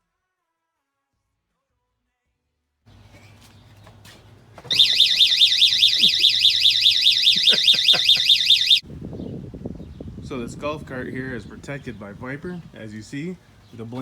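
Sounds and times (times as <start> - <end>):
warbling alarm siren: 4.7 - 8.8.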